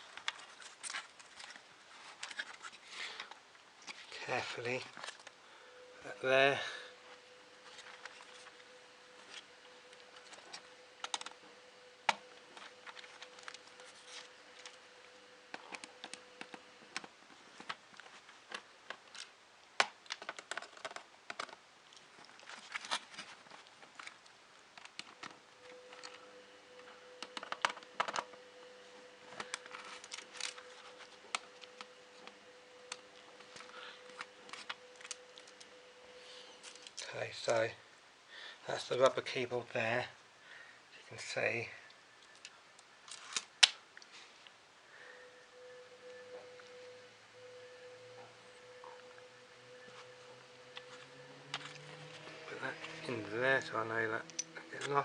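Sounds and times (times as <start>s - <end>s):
faint steady hum: 0.0s - 55.0s
plastic keyboard parts clicking: 11.0s - 11.3s, 18.5s - 21.6s, 27.2s - 28.3s.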